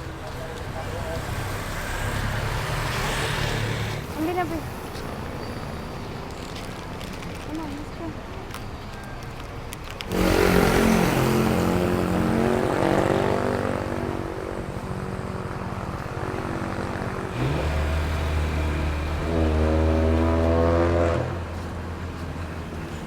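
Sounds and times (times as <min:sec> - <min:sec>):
passing vehicle engine: 0:00.0 - 0:06.6, 0:10.0 - 0:23.0
engine starting and revving: 0:10.1 - 0:13.7, 0:16.7 - 0:21.2.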